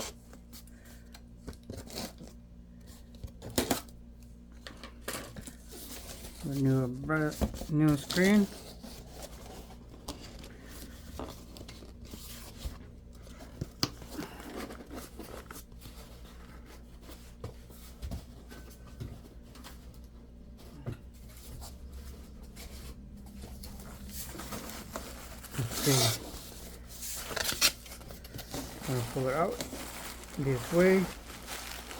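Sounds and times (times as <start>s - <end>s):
packaging rustling and crinkling: 5.3s - 18.6s, 21.3s - 31.9s.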